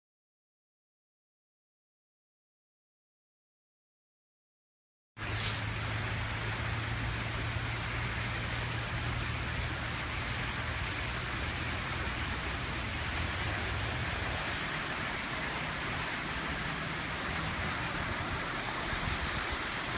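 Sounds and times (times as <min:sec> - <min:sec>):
low steady hum: 0:05.2 - 0:19.9
rushing rain: 0:05.2 - 0:19.9.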